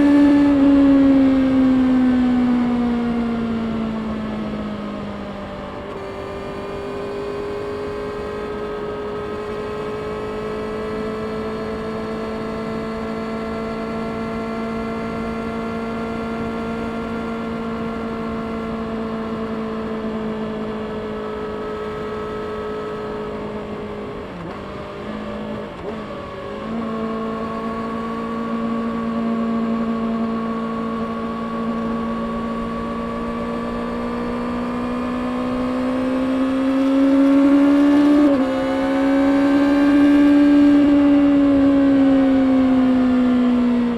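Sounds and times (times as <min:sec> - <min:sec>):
motorcycle engine revving: 0:00.0 - 0:04.6, 0:20.6 - 0:43.9.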